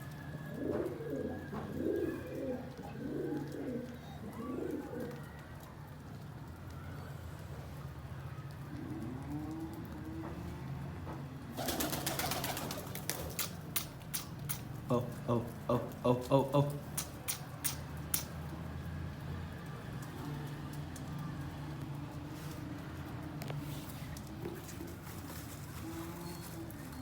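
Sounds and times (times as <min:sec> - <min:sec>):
pigeons cooing: 0:00.0 - 0:05.5, 0:08.5 - 0:10.8, 0:11.4 - 0:18.4, 0:23.2 - 0:27.0
rustling clattering clicks: 0:13.0 - 0:14.8.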